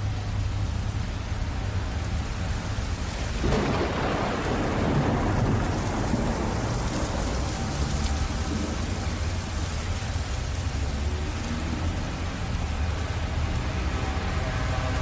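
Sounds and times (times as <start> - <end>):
steady rain: 0.0 - 15.0
thunder rumbling: 2.9 - 11.8.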